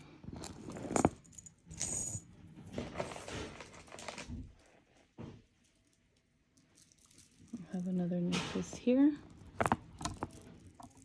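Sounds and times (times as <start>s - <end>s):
metal chain clinking: 0.4s - 2.2s, 6.6s - 8.1s, 9.1s - 11.0s.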